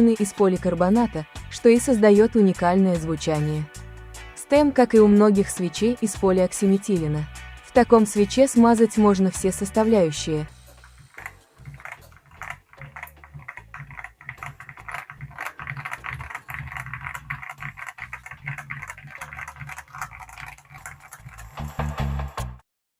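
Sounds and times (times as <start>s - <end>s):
fast typing on mechanical keyboard: 10.8s - 21.7s.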